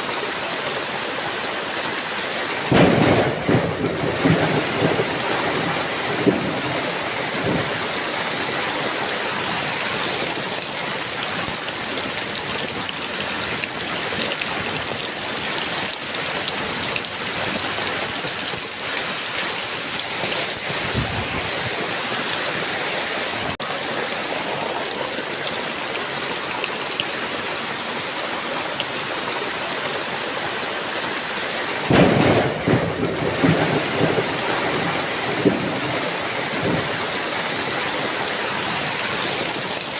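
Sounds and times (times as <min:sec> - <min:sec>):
heavy rain falling: 0:00.0 - 0:39.9
thunder rumbling: 0:02.7 - 0:08.4, 0:20.2 - 0:22.0, 0:31.9 - 0:38.2.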